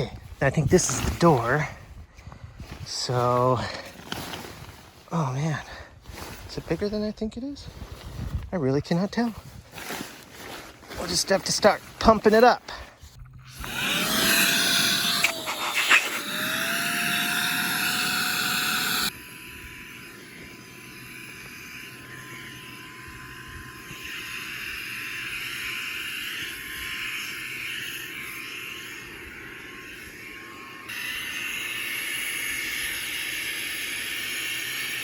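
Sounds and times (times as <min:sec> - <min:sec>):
electric air pump whining: 0:13.2 - 0:35.0.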